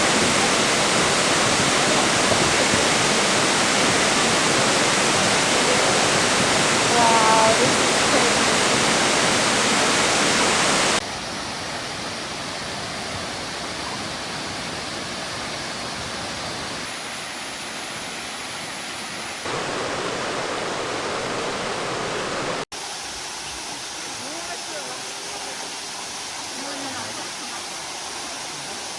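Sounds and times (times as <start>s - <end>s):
waterfall rushing: 0.0s - 11.0s, 19.4s - 28.9s.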